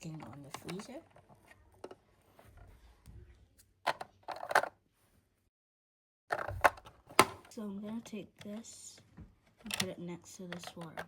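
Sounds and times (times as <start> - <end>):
plastic toys clicking: 0.0 - 1.1, 9.6 - 11.0.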